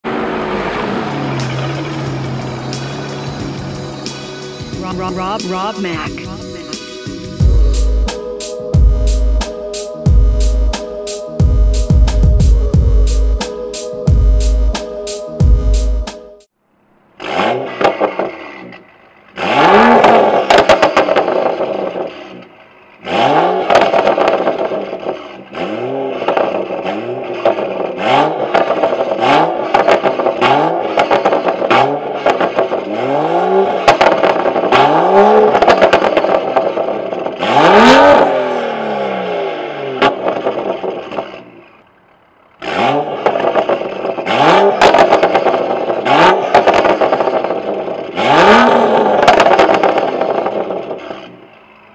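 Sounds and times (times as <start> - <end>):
car engine revving: 0.0 - 51.9
exhaust crackles and pops: 19.8 - 25.4, 26.1 - 32.9, 33.7 - 37.4, 43.1 - 51.7.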